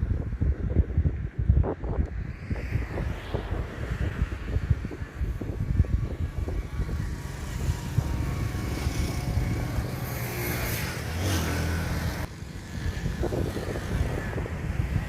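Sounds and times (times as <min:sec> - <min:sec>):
wind on microphone: 0:00.0 - 0:15.0
vehicle engine running: 0:06.2 - 0:12.3.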